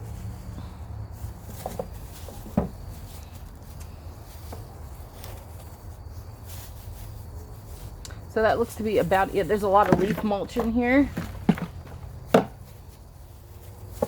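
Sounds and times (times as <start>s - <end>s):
hands rummaging through soil: 0.0s - 14.0s
thump: 11.4s - 12.6s.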